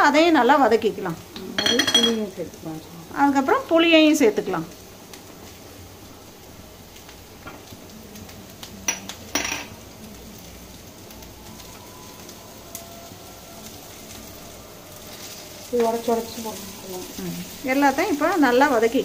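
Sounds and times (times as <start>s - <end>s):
frying hiss: 0.0s - 19.0s
spoon knocking on pan: 1.6s - 2.3s.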